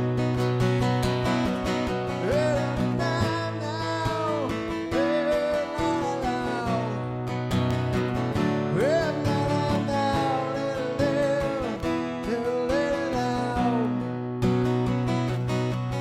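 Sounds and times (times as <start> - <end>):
acoustic guitar strumming: 0.0 - 16.0
wordless singing: 2.1 - 7.0, 8.7 - 13.9.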